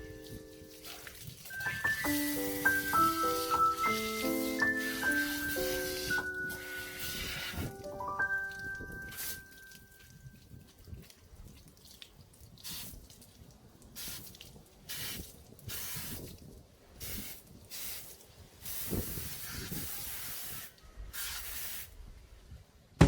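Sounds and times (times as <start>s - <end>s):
hose spraying water: 0.0s - 10.0s, 12.6s - 13.1s, 14.0s - 22.0s.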